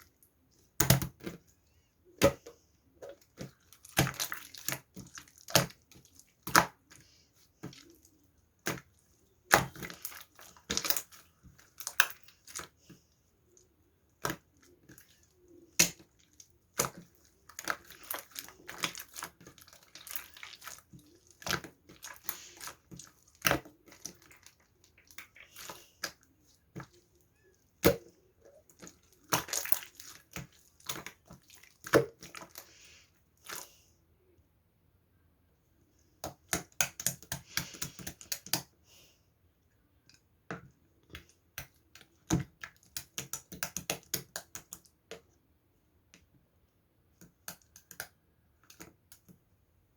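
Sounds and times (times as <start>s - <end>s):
rustling and crinkling: 2.4s - 33.9s.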